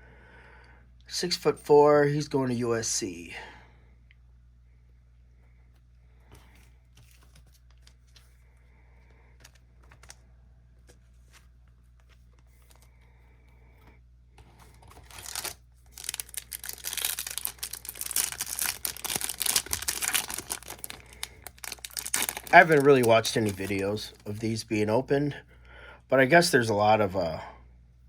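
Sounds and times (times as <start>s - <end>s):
foil wrapper crinkling and tearing: 14.8s - 24.8s.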